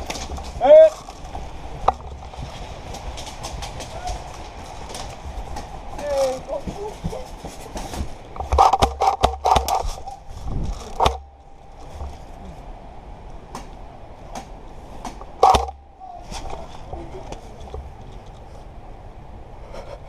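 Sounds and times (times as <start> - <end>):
sharp clicks and knocks: 7.6 - 10.2, 10.8 - 12.2, 13.5 - 15.8
loud knocks: 14.4 - 15.9.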